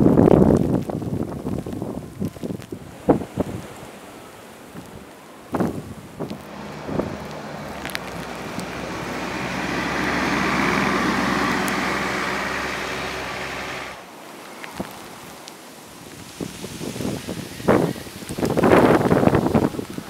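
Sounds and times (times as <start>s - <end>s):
vehicle driving past: 6.4s - 14.0s.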